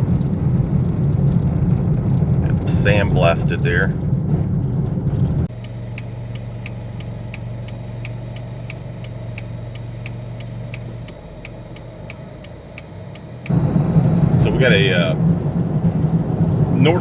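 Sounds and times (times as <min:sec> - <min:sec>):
car driving rumble: 0:00.0 - 0:17.0
car engine idling: 0:00.0 - 0:17.0
light regular ticking: 0:05.4 - 0:17.0.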